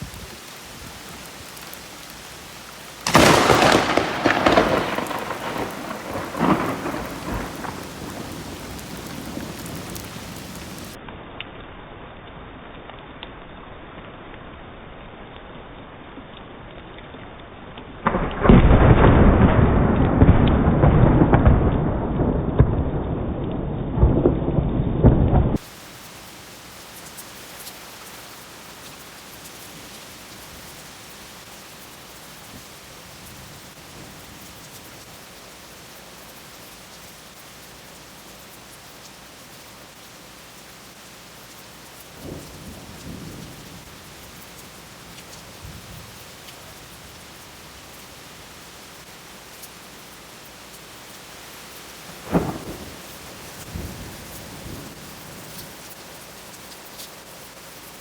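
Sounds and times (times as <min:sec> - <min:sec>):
steady rain hiss: 0:00.0 - 0:58.0
distant thunder rumble: 0:03.0 - 0:11.0, 0:18.0 - 0:25.7, 0:52.1 - 0:56.0
rolling thunderclap: 0:03.0 - 0:11.0, 0:18.0 - 0:25.6, 0:52.1 - 0:55.6.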